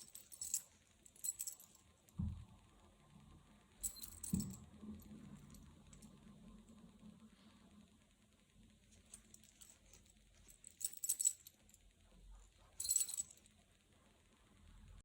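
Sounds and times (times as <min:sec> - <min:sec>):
chain jingling and clinking: 0:00.0 - 0:01.8, 0:03.8 - 0:04.6, 0:09.1 - 0:11.7, 0:12.8 - 0:13.5.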